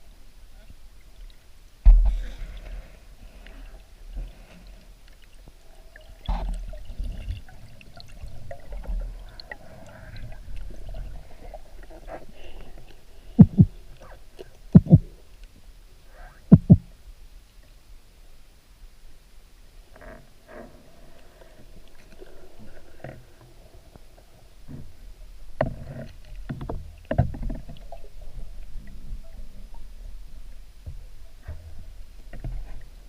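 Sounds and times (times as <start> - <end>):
muffled water movement: 0.0 - 33.0
low thumps: 1.8 - 2.3, 14.7 - 15.1, 16.5 - 16.9.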